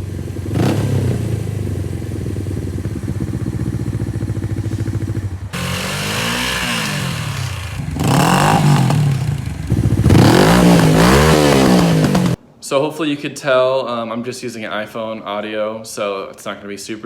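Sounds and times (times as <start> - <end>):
motorcycle engine revving: 0.0 - 12.4.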